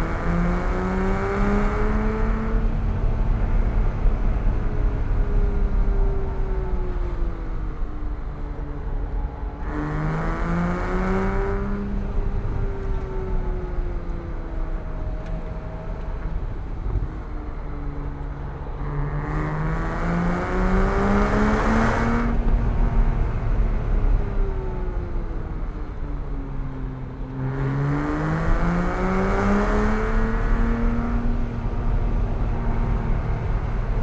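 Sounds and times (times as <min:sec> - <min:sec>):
car engine revving: 0:18.8 - 0:24.7, 0:27.4 - 0:34.0.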